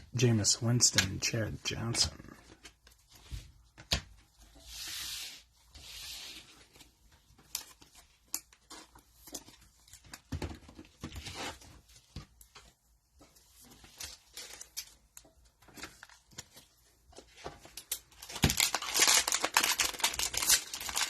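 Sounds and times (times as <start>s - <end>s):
wrapper tearing: 17.8s - 21.0s.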